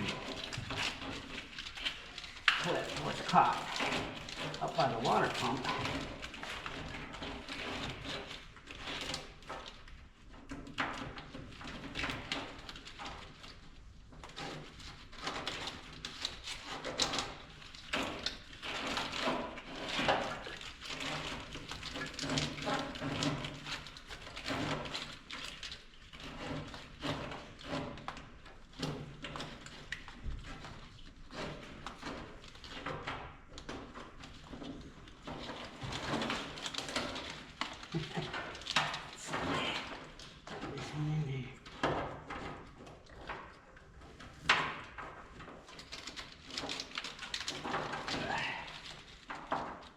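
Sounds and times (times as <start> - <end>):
hands working plastic clips: 0.0 - 10.0.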